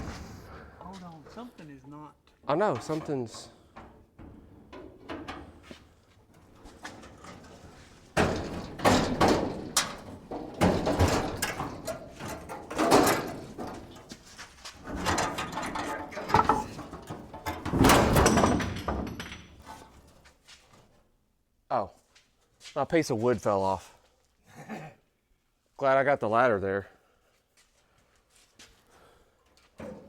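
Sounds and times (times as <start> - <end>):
knocks and rattles: 2.5 - 20.2
steel truck cab clunking and banging: 2.6 - 20.2.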